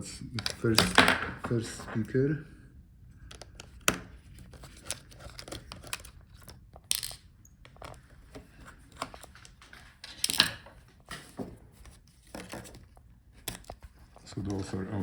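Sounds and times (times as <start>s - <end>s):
clicks and taps handling laptop parts: 3.3s - 14.7s.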